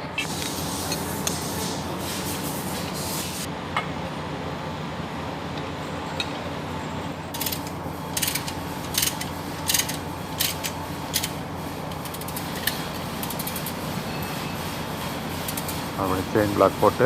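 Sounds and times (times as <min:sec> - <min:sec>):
ratchet wrench clicking: 0:07.4 - 0:11.4, 0:12.0 - 0:13.8.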